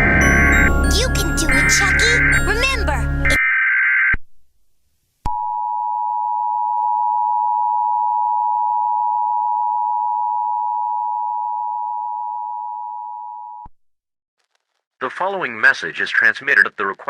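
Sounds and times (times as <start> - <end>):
two-tone alert signal: 0.0 - 3.4.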